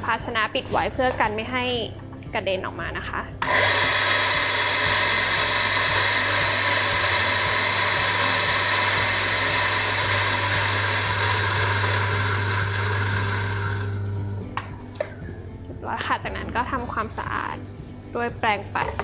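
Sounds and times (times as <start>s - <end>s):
coffee grinder running: 3.4s - 15.2s.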